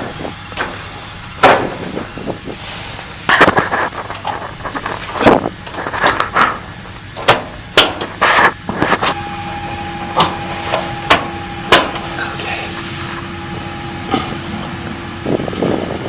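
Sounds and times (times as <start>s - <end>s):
steady hum: 0.0s - 16.0s
washer parts knocking: 11.1s - 12.1s.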